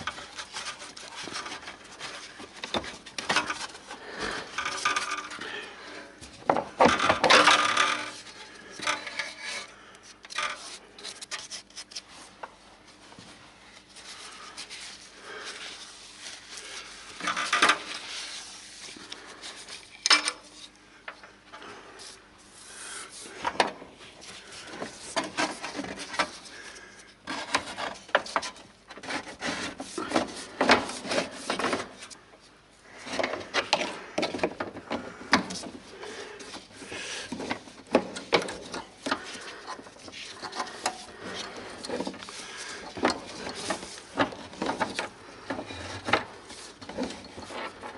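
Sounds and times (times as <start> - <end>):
metal car parts scraping and clanking: 0.0 - 5.6, 6.6 - 12.1, 17.1 - 18.9, 36.4 - 47.9.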